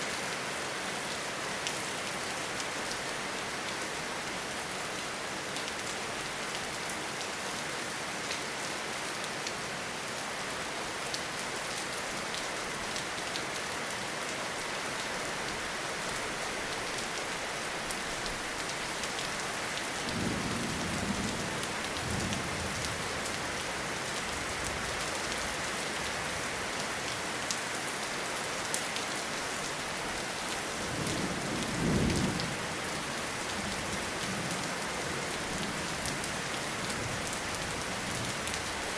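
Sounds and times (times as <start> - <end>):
heavy rain in a forest: 0.0 - 38.9
low rumbles of thunder: 20.1 - 22.9, 30.9 - 32.6.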